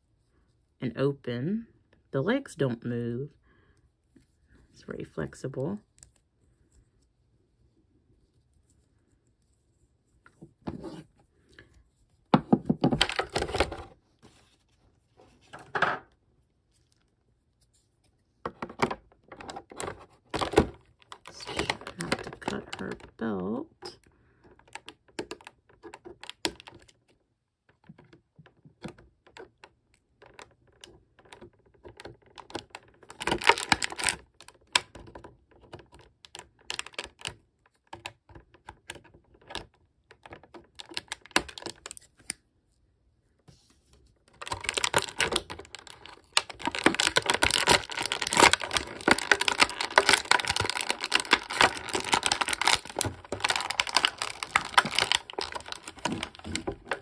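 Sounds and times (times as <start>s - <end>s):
plastic crackling: 12.4s - 14.4s, 18.4s - 42.4s, 44.2s - 57.0s.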